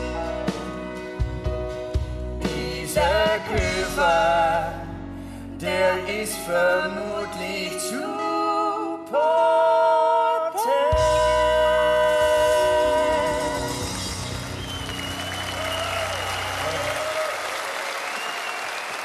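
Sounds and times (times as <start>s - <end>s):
person singing with vibrato: 2.4s - 14.4s.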